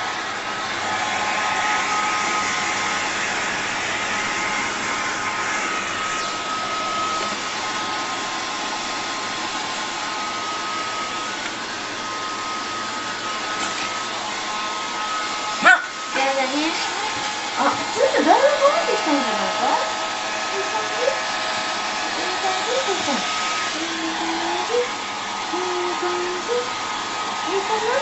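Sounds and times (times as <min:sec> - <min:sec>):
hair dryer running: 0:00.0 - 0:28.0.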